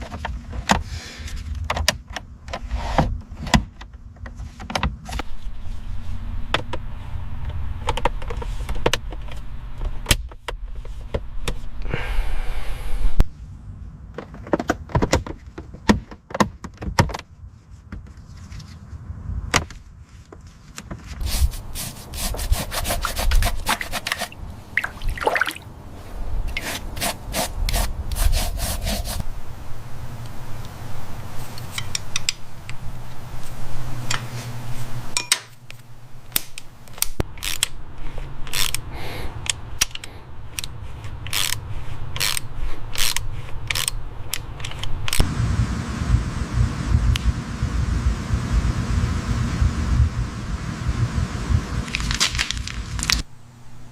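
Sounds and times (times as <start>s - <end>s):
rubbing and scraping: 20.0s - 25.2s, 25.9s - 29.2s
low steady hum: 45.2s - 53.9s.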